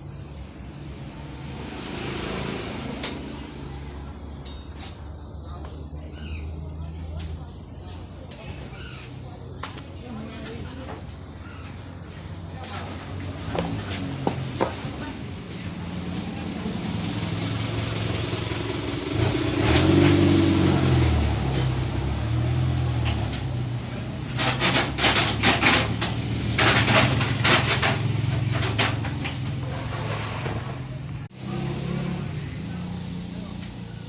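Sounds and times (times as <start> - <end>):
motorcycle engine running: 13.4 - 22.3.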